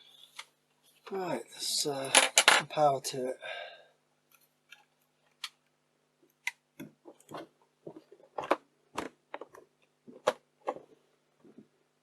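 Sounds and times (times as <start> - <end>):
faint steady hum: 0.0 - 12.0
plastic mechanism clicks and clacks: 6.4 - 10.9.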